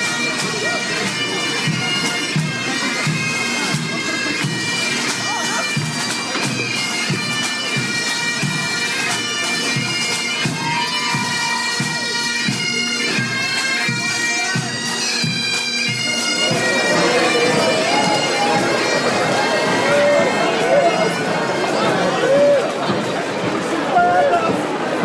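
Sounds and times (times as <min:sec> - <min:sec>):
bagpipes playing: 0:00.0 - 0:25.0
crowd voices: 0:00.0 - 0:25.0
drum beat: 0:16.2 - 0:22.5.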